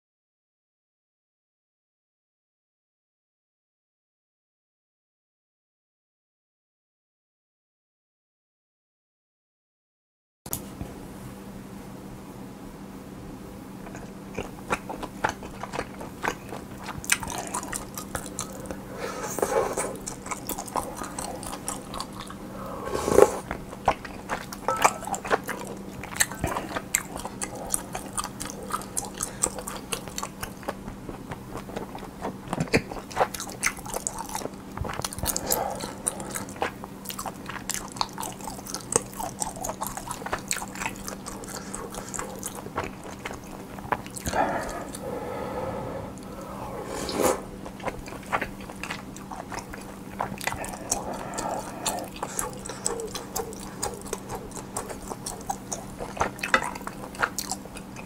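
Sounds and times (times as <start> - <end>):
faint steady hum: 10.5 - 58.0
wet chewing: 13.8 - 46.8, 47.4 - 58.0.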